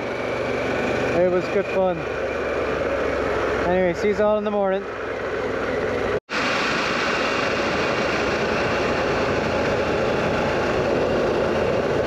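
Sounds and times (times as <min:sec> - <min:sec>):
motorcycle engine: 0:00.0 - 0:12.0
wind rush: 0:05.2 - 0:12.0.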